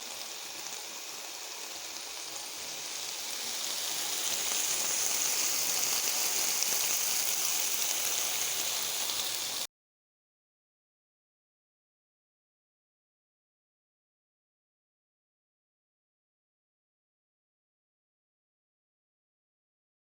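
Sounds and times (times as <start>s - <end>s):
food sizzling in hot oil: 0.0s - 9.7s.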